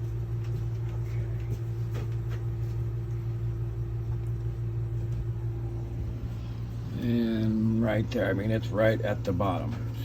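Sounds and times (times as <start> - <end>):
low machine hum: 0.0 - 10.0.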